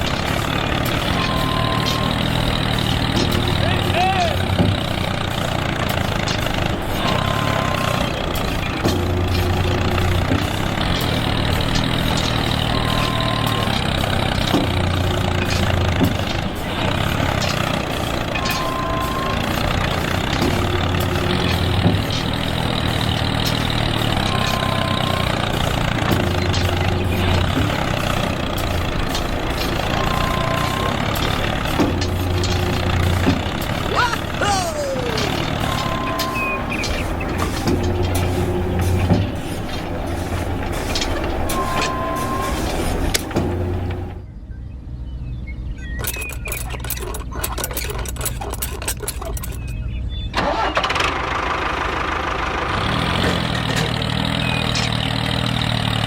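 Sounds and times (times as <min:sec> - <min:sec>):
small engine humming: 0:00.0 - 0:44.3.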